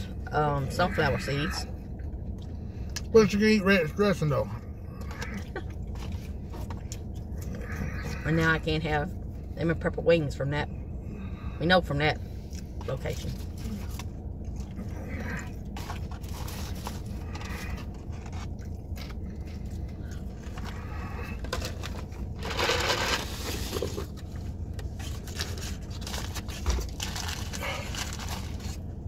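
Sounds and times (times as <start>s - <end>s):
steady low hum: 0.0s - 29.0s
paper wrapper crinkling: 25.0s - 28.9s.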